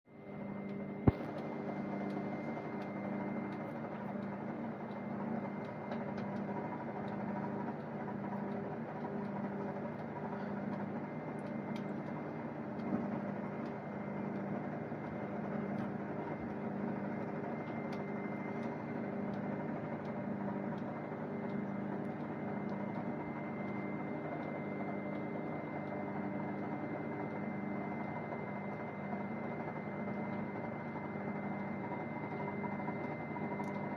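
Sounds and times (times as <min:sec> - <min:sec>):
microwave oven humming: 0:00.1 - 0:33.9
microwave click: 0:00.7 - 0:05.0.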